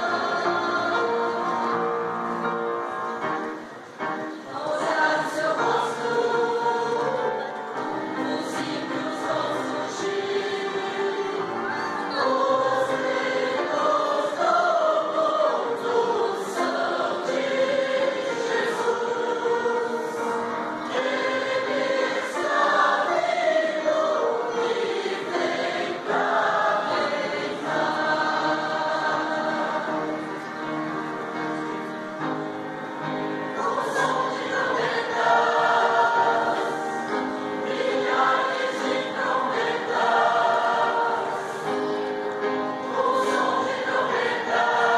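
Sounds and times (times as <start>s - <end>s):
church choir singing: 0.0s - 44.9s.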